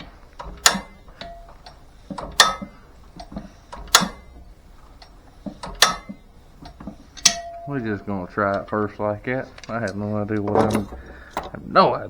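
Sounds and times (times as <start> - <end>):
sharp metallic clacks: 0.4 - 4.3, 5.0 - 7.7.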